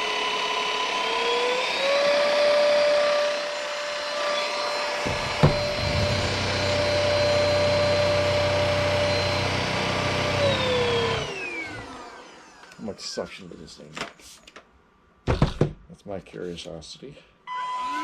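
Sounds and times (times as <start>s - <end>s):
vacuum motor whining: 0.0s - 12.8s
low hum: 5.0s - 11.3s.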